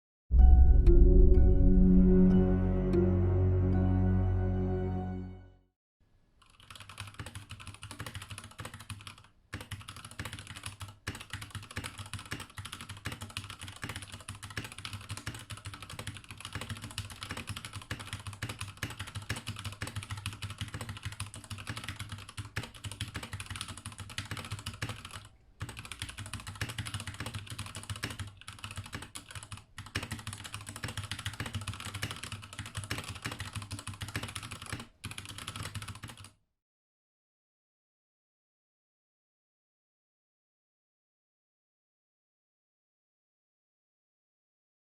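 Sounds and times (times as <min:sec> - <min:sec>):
mechanical keyboard typing: 0:06.4 - 0:36.4.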